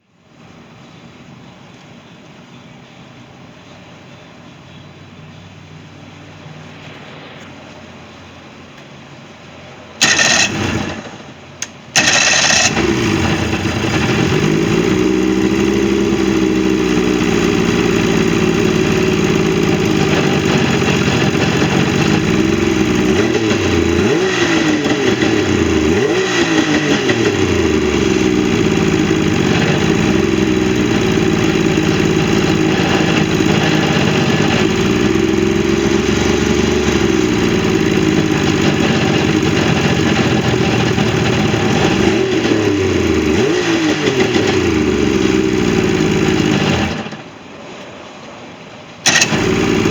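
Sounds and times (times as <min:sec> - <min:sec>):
boat engine starting and running: 0:10.0 - 0:47.5, 0:49.0 - 0:49.9.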